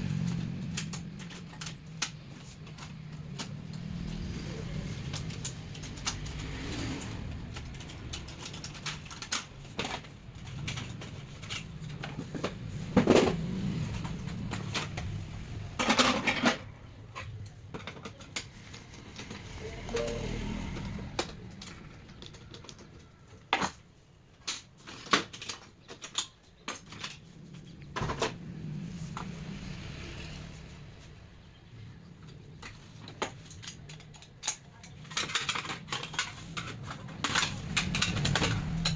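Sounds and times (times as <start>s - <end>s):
plastic parts clattering: 0.0s - 19.6s, 20.7s - 29.4s, 32.2s - 38.9s
printer parts clicking and knocking: 32.6s - 38.9s.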